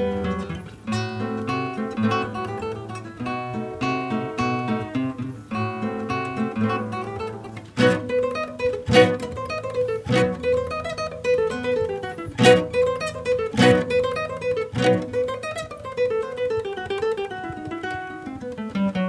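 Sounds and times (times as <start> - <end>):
classical guitar playing: 0.0 - 19.0
loud strummed chords: 5.6 - 16.0.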